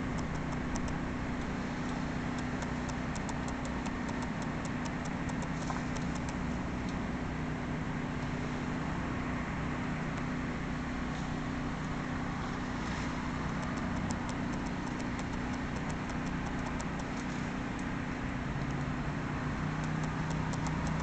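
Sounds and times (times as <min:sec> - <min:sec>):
faint rapid ticking: 0:00.0 - 0:01.0, 0:01.9 - 0:06.5, 0:13.4 - 0:17.9, 0:19.6 - 0:21.0
engine running steadily: 0:00.0 - 0:21.0.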